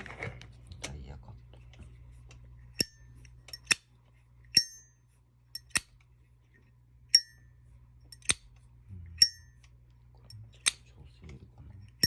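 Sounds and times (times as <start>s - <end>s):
lighter lid clacking open and shut: 5.6s - 6.0s, 8.1s - 8.5s.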